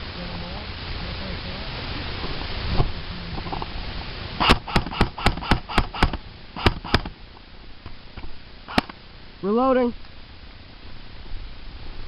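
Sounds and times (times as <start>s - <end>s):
airsoft gun shots: 4.4s - 7.2s, 8.7s - 9.0s.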